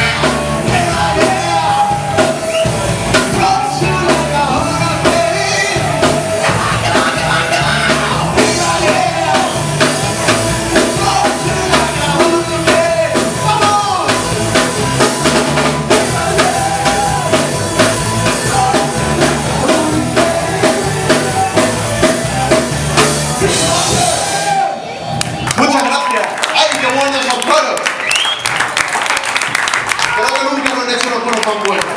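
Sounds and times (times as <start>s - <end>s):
person singing: 0.0s - 15.0s, 15.8s - 24.8s
bass guitar: 0.0s - 25.5s
drum kit: 0.0s - 25.5s.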